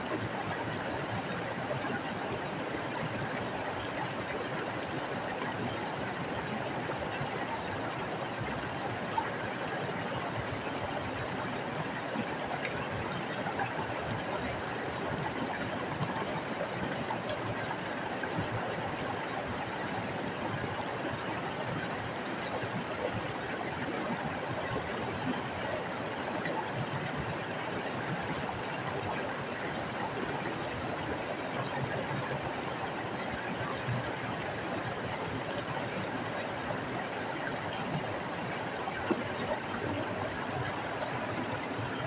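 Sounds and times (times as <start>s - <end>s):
water rushing over stones: 32.1s - 42.0s.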